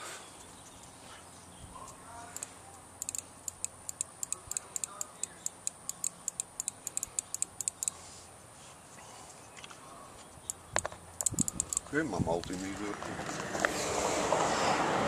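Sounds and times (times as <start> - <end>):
rapid sharp clicking: 1.9 - 7.9, 11.2 - 11.9.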